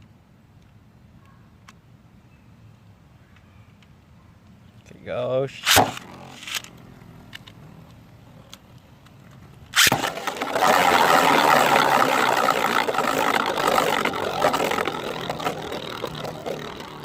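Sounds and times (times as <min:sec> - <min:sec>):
spinning tops whirring and scraping: 0:05.5 - 0:08.0, 0:09.7 - 0:17.0
spinning top launcher snap: 0:05.6 - 0:06.8, 0:09.8 - 0:16.8.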